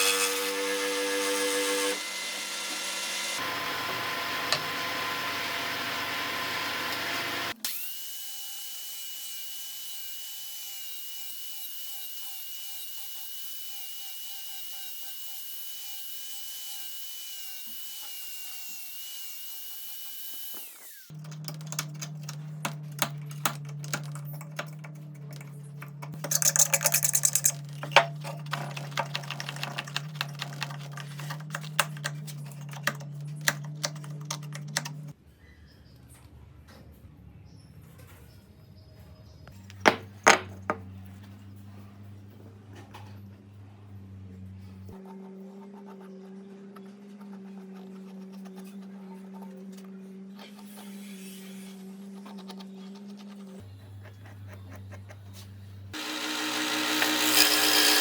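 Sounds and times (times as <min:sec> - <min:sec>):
power tool motor whine: 0:01.9 - 0:08.1, 0:56.0 - 0:58.0
sharp clicks and knocks: 0:21.2 - 0:35.1.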